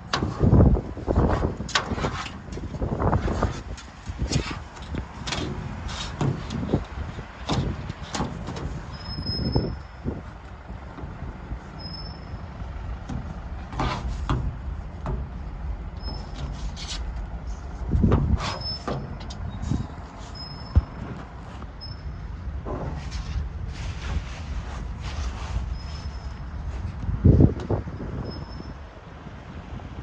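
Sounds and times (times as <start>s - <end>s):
large vehicle rumbling: 0.0s - 30.0s
brief high squeaks: 8.9s - 10.0s, 11.8s - 12.5s, 16.0s - 17.2s, 18.4s - 21.2s, 21.8s - 22.3s, 25.5s - 26.6s, 28.2s - 28.8s.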